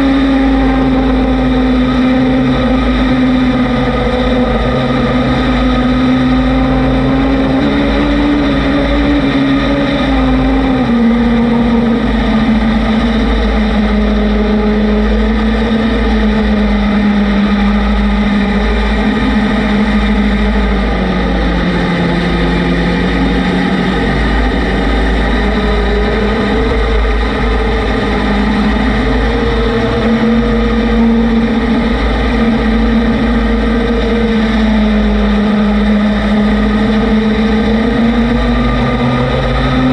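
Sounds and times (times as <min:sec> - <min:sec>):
vehicle engine running: 0:00.0 - 0:39.9
wind on microphone: 0:00.0 - 0:39.9.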